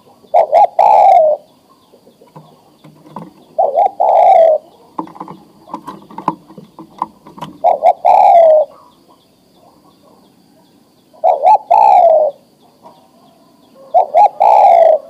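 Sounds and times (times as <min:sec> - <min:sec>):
dove cooing: 0:00.0 - 0:15.0
faint clicks and knocks: 0:02.2 - 0:03.6, 0:05.0 - 0:07.6.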